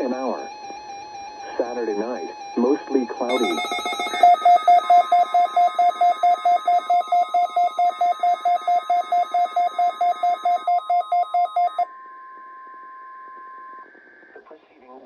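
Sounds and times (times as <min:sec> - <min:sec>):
rapid pulsing alarm beep: 0:00.0 - 0:11.9
higher steady tone: 0:03.3 - 0:11.8
steady alert tone: 0:03.3 - 0:11.8.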